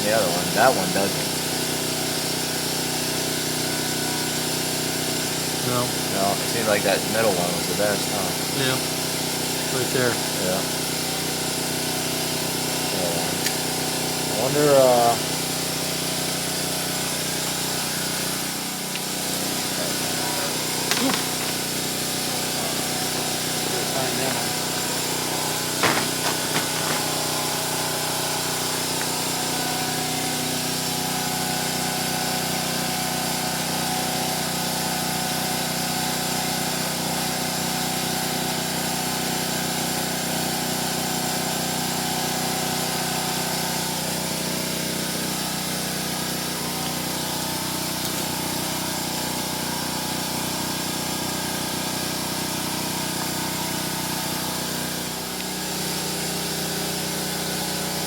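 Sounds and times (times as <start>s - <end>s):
motor humming: 0.0s - 34.8s.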